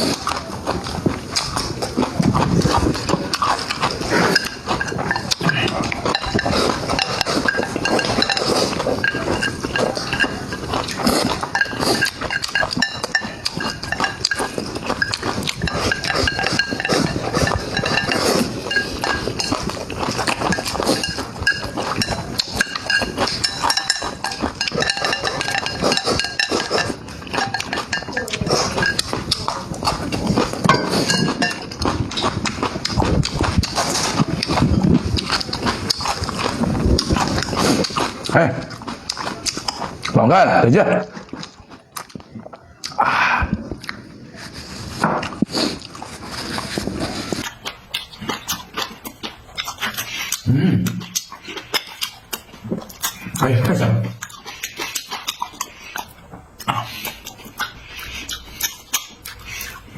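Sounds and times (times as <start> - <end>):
chewing and lip-smacking: 0.0 - 59.9
dishes or utensils clinking: 2.6 - 41.5.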